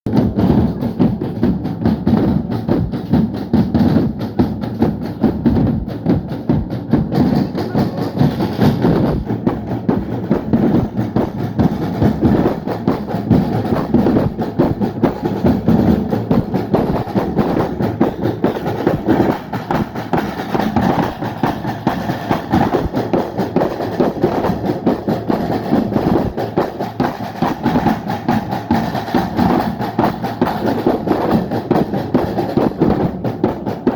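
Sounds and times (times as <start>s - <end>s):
drumming band playing: 0.1s - 33.9s.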